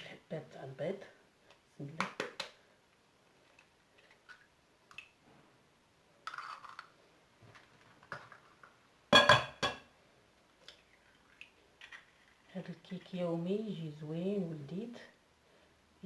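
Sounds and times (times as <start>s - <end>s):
eggs knocking on bowl: 9.2s - 9.8s.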